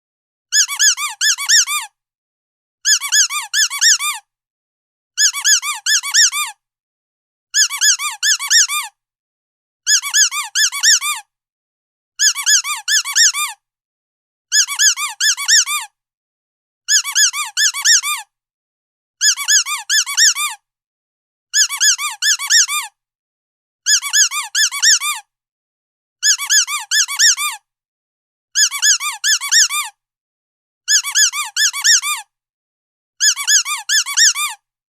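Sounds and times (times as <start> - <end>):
squeaky dog toy: 0.5 - 2.0, 2.8 - 4.3, 5.2 - 6.6, 7.6 - 9.0, 9.9 - 11.3, 12.2 - 13.6, 14.5 - 16.0, 16.9 - 18.3, 19.2 - 20.6, 21.6 - 23.0, 23.9 - 25.3, 26.2 - 27.7, 28.6 - 30.0, 30.9 - 32.4, 33.2 - 34.7.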